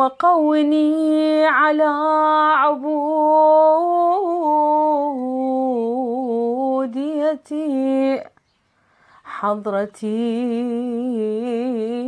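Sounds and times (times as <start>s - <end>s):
woman chanting a prayer: 0.0s - 8.3s.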